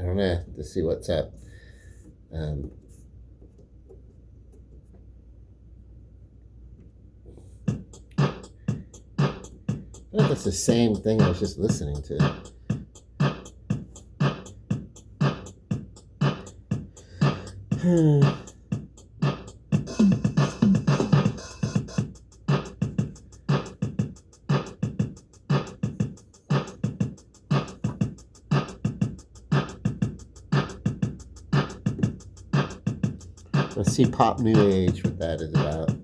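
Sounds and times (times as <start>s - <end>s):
drum-machine beat: 7.6s - 36.0s.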